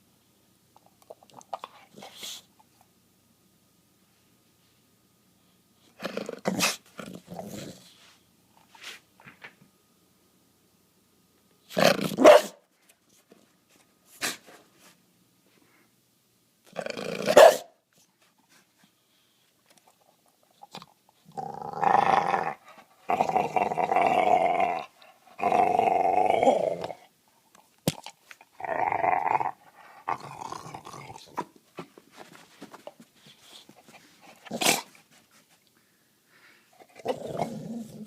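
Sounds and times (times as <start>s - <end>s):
dog growling: 16.7s - 17.4s, 21.2s - 27.1s, 28.6s - 31.5s, 36.8s - 38.0s.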